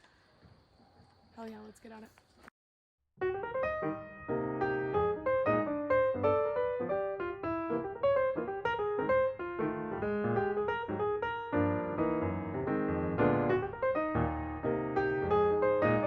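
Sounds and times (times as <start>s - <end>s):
piano music: 3.2s - 16.0s.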